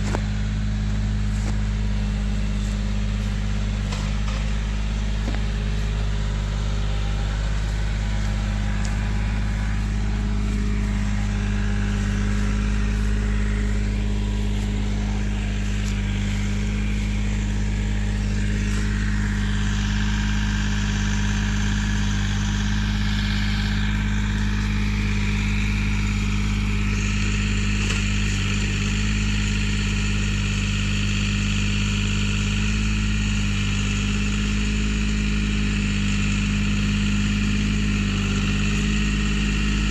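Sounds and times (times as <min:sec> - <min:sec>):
engine running steadily: 0:00.0 - 0:39.9
high hiss and whine: 0:00.2 - 0:28.6.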